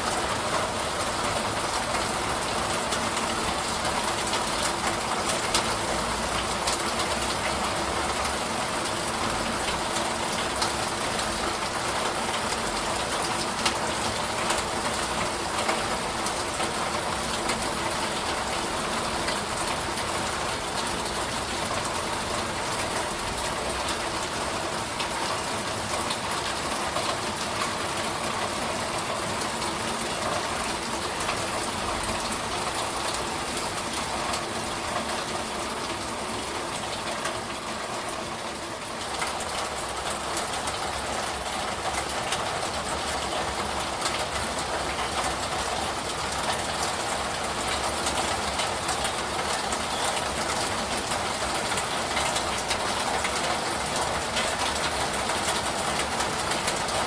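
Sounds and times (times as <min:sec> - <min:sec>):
steady rain hiss: 0:00.0 - 0:57.0
raindrop ticks: 0:39.0 - 0:57.0.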